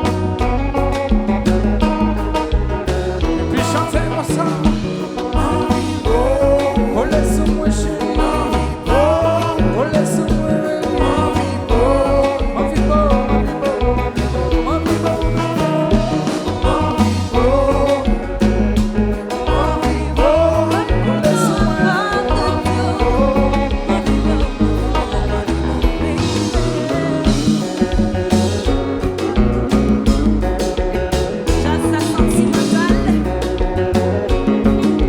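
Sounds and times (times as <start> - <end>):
heavy bass: 0.0 - 35.0
lead line with bending notes: 0.0 - 35.0
live band playing: 0.0 - 35.0.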